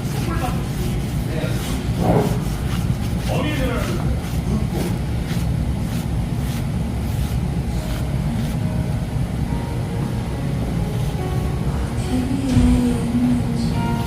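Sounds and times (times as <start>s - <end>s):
brush strokes hissing: 0.0s - 9.1s, 10.6s - 12.2s.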